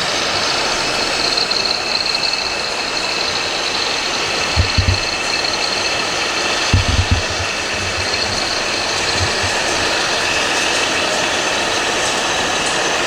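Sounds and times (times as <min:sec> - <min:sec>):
low thumps: 0:04.5 - 0:05.6, 0:06.6 - 0:10.4.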